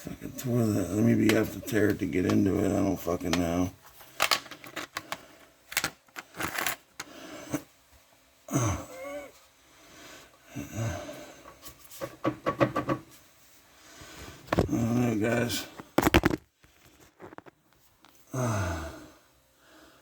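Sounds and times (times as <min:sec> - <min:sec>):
handling clicks and knocks: 0:03.2 - 0:07.1
breathy grunts: 0:18.3 - 0:19.2.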